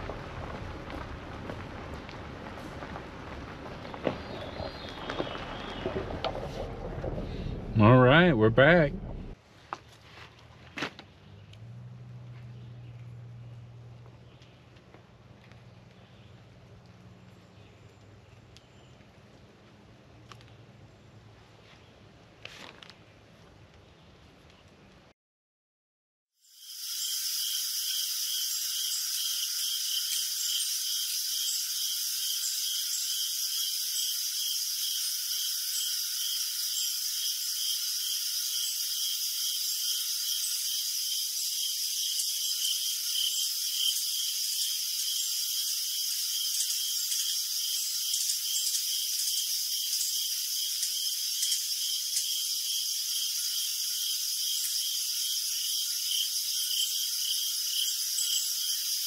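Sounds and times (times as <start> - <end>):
chorus of frogs calling: 26.6 - 59.0.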